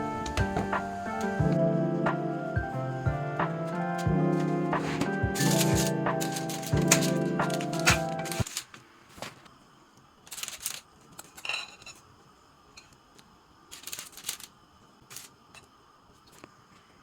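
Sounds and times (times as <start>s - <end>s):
small objects clicking and rustling: 5.4s - 8.8s, 10.2s - 12.0s, 13.7s - 15.7s.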